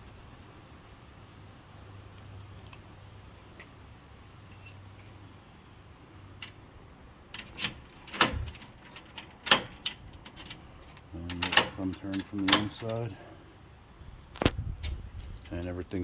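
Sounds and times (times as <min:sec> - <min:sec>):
faint steady hum: 0:00.0 - 0:16.0
door lock clicking and clacking: 0:07.4 - 0:13.0.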